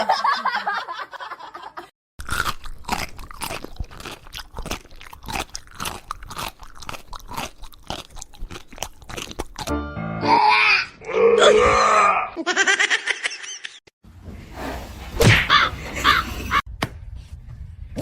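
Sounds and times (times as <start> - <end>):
crunchy chewing: 2.2 - 9.7.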